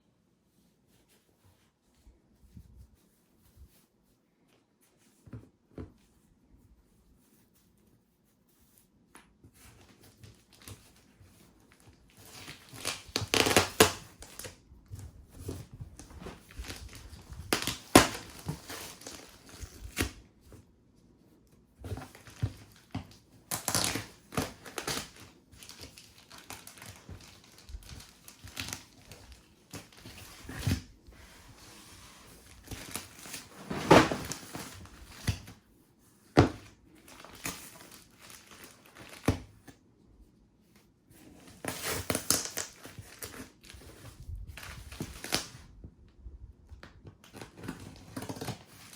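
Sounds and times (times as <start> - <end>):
cardboard and plastic rustling: 8.5 - 39.8, 40.8 - 45.8, 46.7 - 48.9.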